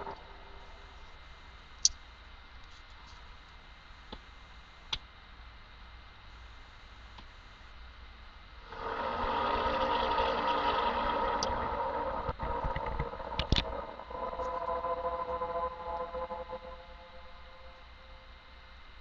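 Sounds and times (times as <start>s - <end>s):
drone of steady tones: 0.0s - 1.7s, 8.6s - 19.0s.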